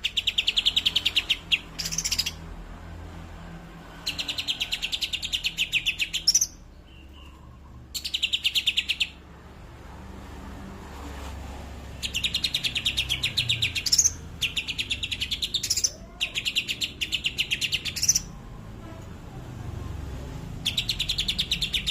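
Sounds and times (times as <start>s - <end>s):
bird singing rapid sharp notes: 0.0s - 2.4s, 4.0s - 9.2s, 12.0s - 18.4s, 20.6s - 21.9s.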